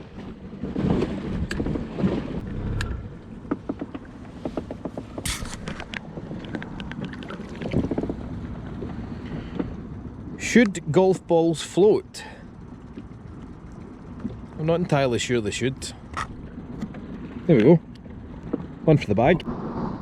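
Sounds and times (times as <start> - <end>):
wind on microphone: 0.0 - 3.5, 4.1 - 10.3, 18.2 - 20.0
water against boat hull: 0.0 - 19.4.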